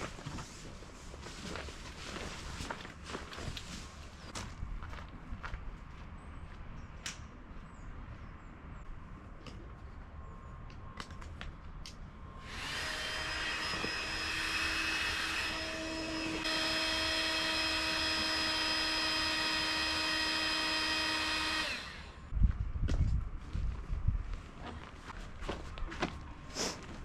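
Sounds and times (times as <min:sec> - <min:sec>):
small fan motor whining: 0:12.4 - 0:22.3.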